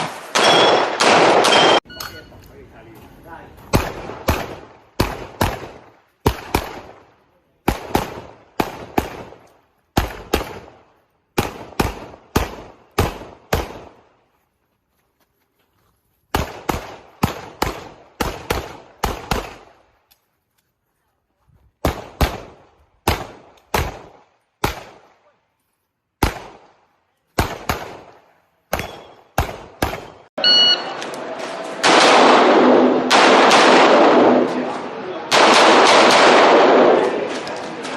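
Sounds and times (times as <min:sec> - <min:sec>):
handgun shots with echo: 0:00.3 - 0:01.8.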